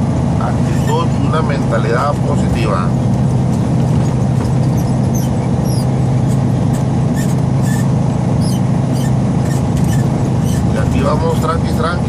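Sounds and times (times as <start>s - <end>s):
diesel engine droning: 0.0s - 12.0s
short high-pitched squeaks: 4.0s - 10.8s.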